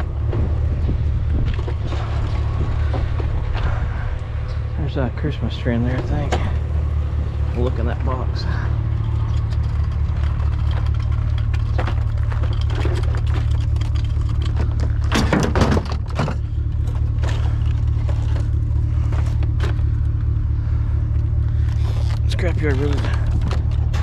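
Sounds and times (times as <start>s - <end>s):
vehicle engine humming: 0.0s - 24.0s
items rattling in a box: 9.4s - 19.8s.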